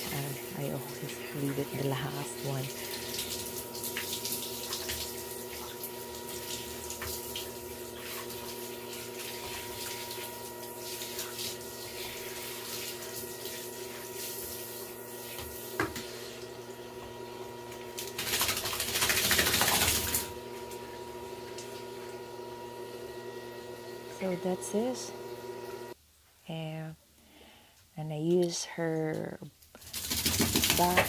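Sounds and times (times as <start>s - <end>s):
running water: 0.0s - 16.8s, 29.8s - 31.0s.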